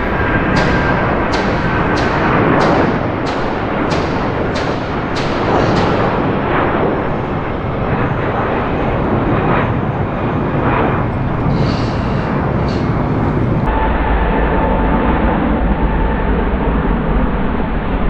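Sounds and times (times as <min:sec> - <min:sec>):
engine whine: 0:00.0 - 0:18.0
jet engines roaring: 0:00.0 - 0:18.0.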